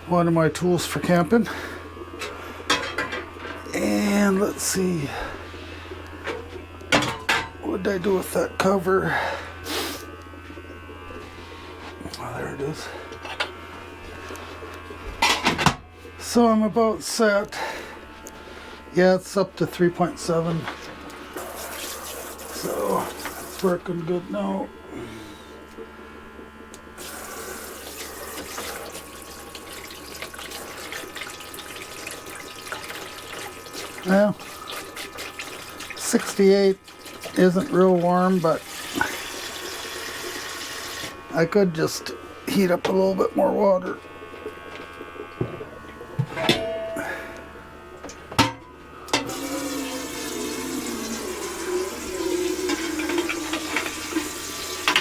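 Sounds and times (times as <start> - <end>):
faint steady hum: 0.0 - 55.0
water running from a hose: 0.1 - 10.1, 17.2 - 25.4, 26.9 - 41.5, 49.1 - 55.0.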